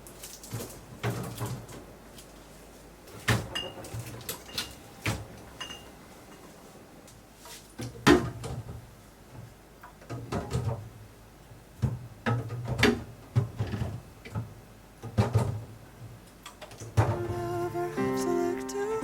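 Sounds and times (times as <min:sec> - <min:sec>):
plastic containers clattering in fridge: 0:00.0 - 0:02.2, 0:03.1 - 0:05.9, 0:07.7 - 0:11.1, 0:11.7 - 0:17.5.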